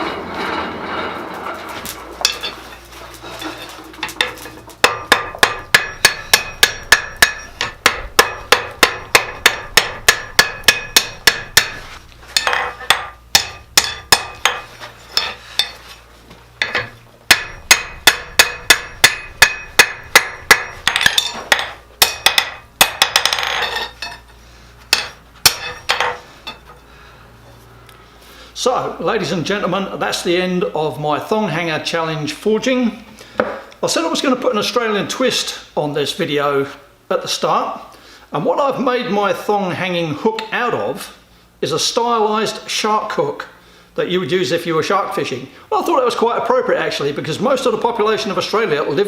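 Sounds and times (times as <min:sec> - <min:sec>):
hammer striking steel on anvil: 0:01.8 - 0:02.6, 0:04.1 - 0:15.8, 0:16.6 - 0:24.2, 0:24.9 - 0:26.7.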